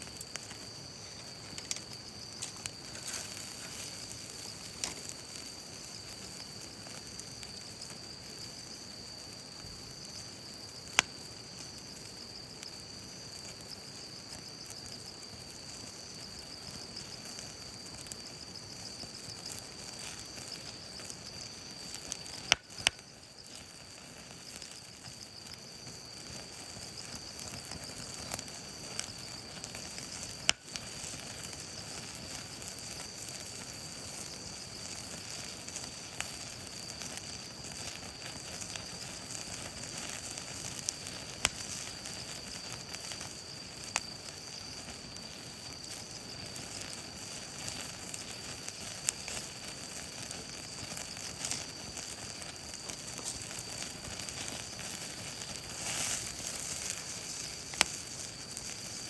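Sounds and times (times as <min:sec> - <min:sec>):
fire popping and crackling: 0:00.0 - 0:59.0
steak sizzling over fire: 0:00.0 - 0:59.0.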